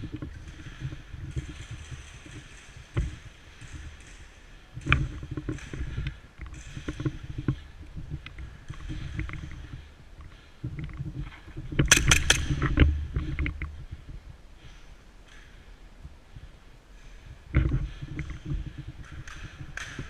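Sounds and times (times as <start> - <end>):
microphone handling rumble: 10.6 - 14.4.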